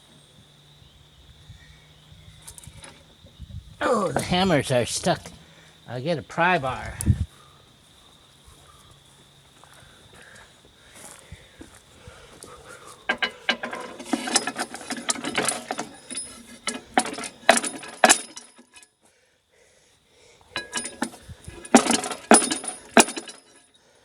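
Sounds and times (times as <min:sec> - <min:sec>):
metal pipe knocking on metal: 0:13.1 - 0:18.3, 0:20.6 - 0:23.4.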